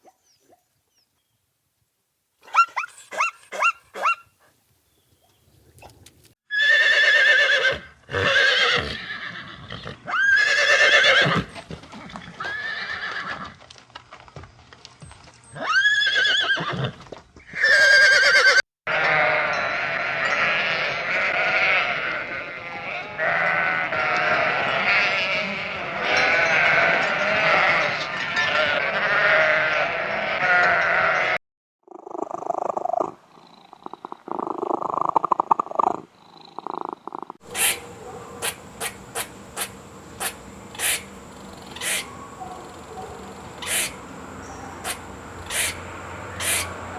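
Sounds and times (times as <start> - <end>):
farm animals calling: 17.5 - 31.4, 32.4 - 46.9.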